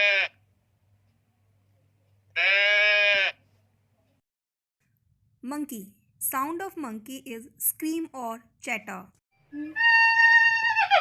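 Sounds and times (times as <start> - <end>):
goat bleating: 0.0 - 0.4, 2.4 - 3.4.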